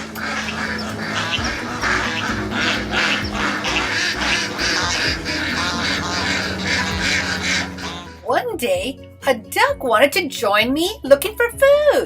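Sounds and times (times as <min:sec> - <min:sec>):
ducks quacking: 0:00.0 - 0:08.2
background music: 0:00.0 - 0:12.0.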